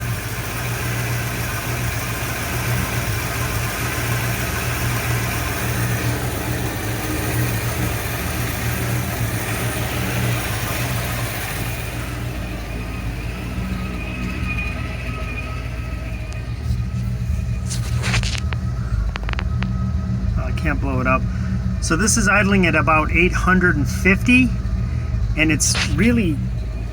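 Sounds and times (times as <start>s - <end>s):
truck engine idling roughly: 0.0s - 26.9s.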